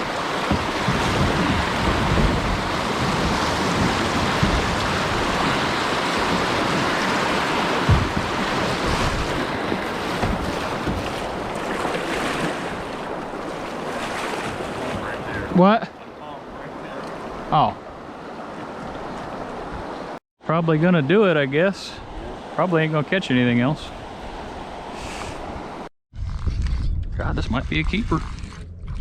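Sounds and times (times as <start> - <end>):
river rapids rushing: 0.0 - 15.6
wind buffeting microphone: 0.0 - 15.6
low knocks: 0.4 - 11.7.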